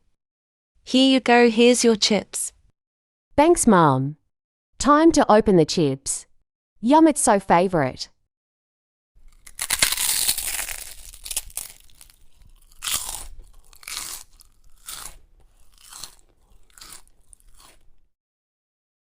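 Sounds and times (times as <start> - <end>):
potato chips crunched and chewed: 9.2 - 18.0.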